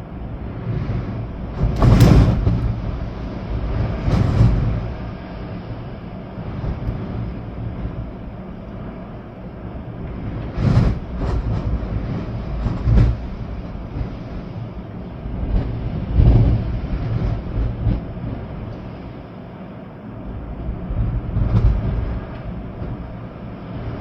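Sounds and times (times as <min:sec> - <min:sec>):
wind buffeting microphone: 0:00.0 - 0:19.2
storm wind with rain: 0:00.0 - 0:24.0.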